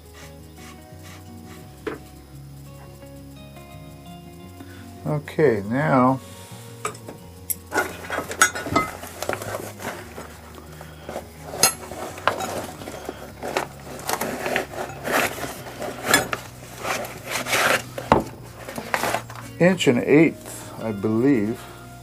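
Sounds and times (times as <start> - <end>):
metal tools clinking and scraping: 6.8 - 21.7.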